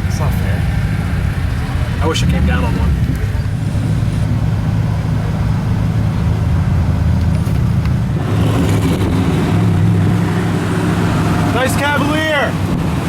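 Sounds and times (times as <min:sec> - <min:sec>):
car engine running at low revs: 0:00.0 - 0:13.0.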